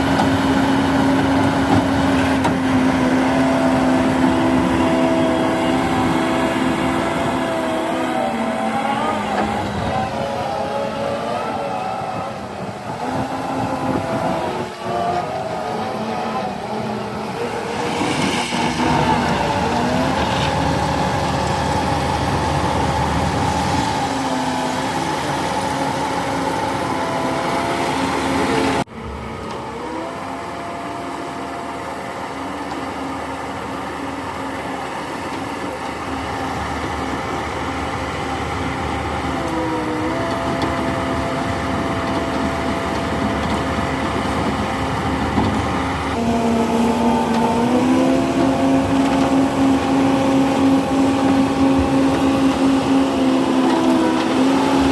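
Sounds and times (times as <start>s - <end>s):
construction machine engine revving: 0.0s - 54.9s.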